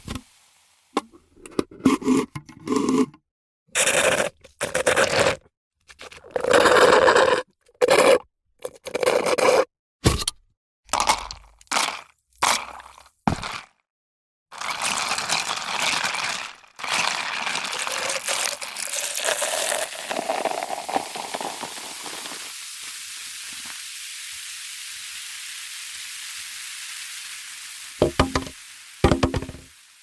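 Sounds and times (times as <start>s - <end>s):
fizzy drink pouring into cup: 14.6s - 29.8s
drink fizzing hiss: 17.0s - 30.0s.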